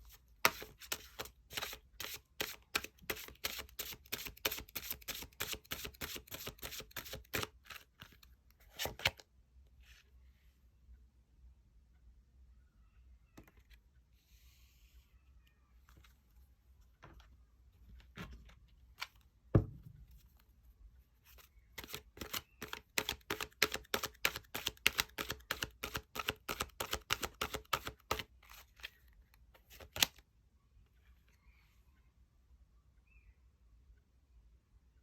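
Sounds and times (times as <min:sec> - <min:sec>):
cards being shuffled: 0:00.1 - 0:09.2, 0:21.4 - 0:29.0, 0:29.6 - 0:30.2.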